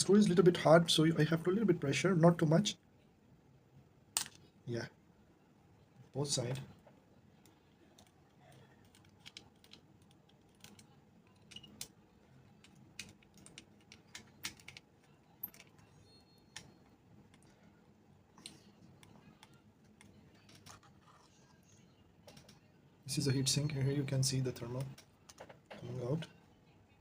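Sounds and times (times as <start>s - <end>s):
screwdriver and metal parts clicking: 8.8s - 12.0s, 12.6s - 17.4s.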